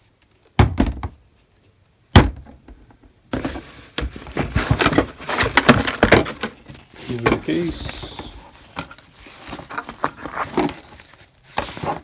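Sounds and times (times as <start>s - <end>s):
packaging rustling and crinkling: 3.4s - 12.0s.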